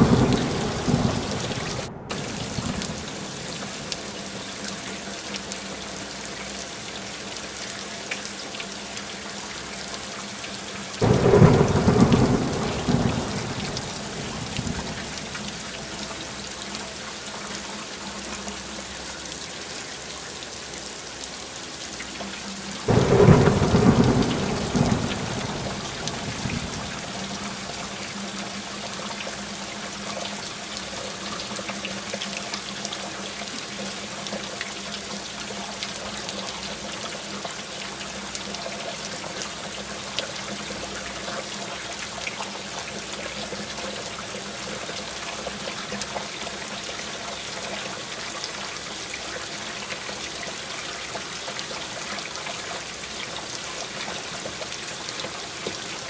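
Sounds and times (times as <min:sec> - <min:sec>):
thunder rolling: 0:00.0 - 0:03.8, 0:11.0 - 0:15.9, 0:22.9 - 0:27.6
steady rain falling: 0:00.0 - 0:56.0.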